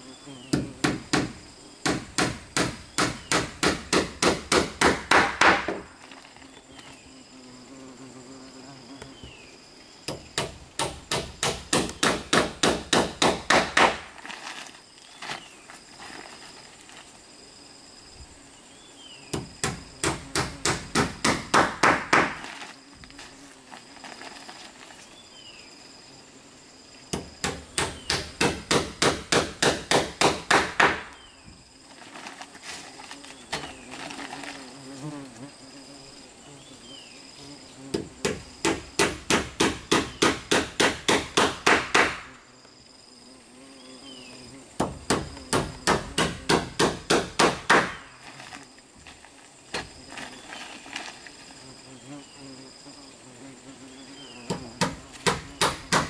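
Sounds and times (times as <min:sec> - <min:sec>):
insects buzzing faintly: 0:00.0 - 0:56.0
hammer driving nails into wood: 0:00.5 - 0:05.8, 0:10.1 - 0:14.0, 0:27.1 - 0:31.1, 0:38.0 - 0:42.3, 0:44.8 - 0:48.0.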